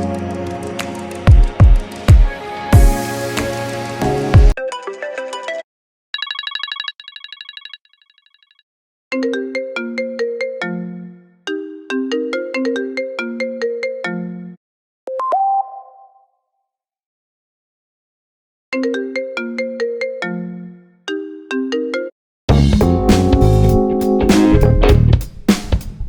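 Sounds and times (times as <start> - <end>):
electronic ringtone melodies: 6.2 - 8.6.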